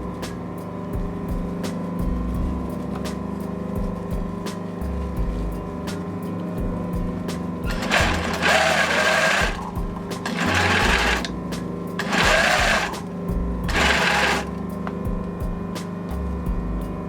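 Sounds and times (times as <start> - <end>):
steady hum: 0.0 - 17.0
sewing machine stitching: 7.6 - 13.1, 13.7 - 14.6.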